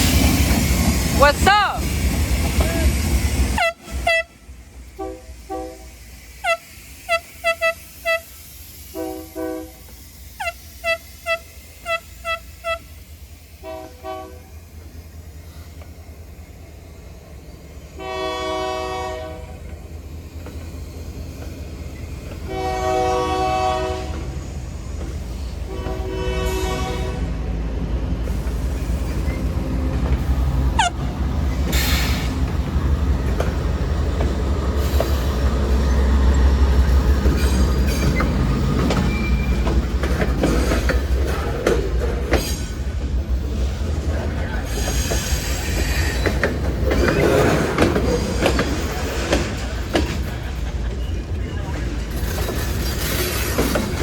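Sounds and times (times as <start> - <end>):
locomotive rumble: 0.0 - 54.0
locomotive air horn toots: 3.5 - 9.8, 10.4 - 13.0, 13.6 - 14.5, 18.0 - 19.7, 22.4 - 24.4, 25.6 - 27.4, 30.8 - 31.1.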